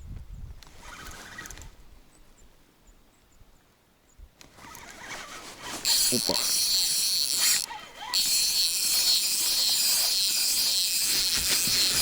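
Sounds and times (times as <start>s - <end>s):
fishing reel whirring: 4.8s - 12.0s.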